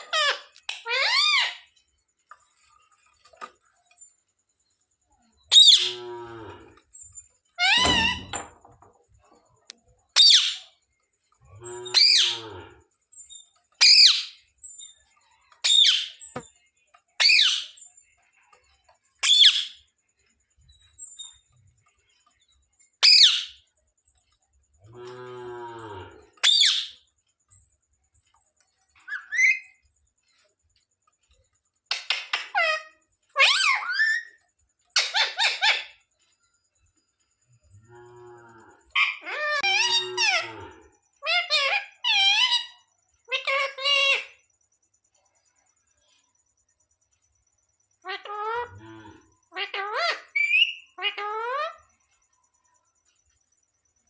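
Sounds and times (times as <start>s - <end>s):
parrot screeching: 0.0s - 1.7s, 5.5s - 6.0s, 7.6s - 8.5s, 10.2s - 10.6s, 11.9s - 12.4s, 13.8s - 14.4s, 15.6s - 16.2s, 23.0s - 23.6s, 26.4s - 27.0s, 29.1s - 29.8s, 32.1s - 34.4s, 35.0s - 36.0s, 38.9s - 40.6s, 41.2s - 44.4s, 49.5s - 51.8s
parrot throaty calls: 5.5s - 6.1s, 11.8s - 12.4s, 38.9s - 40.6s, 48.1s - 51.8s.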